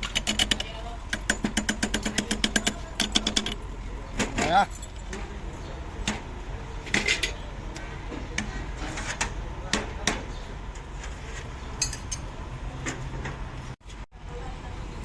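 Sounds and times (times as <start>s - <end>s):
low background hum: 0.0s - 15.0s
metal tools clinking: 4.4s - 5.6s, 11.8s - 12.3s.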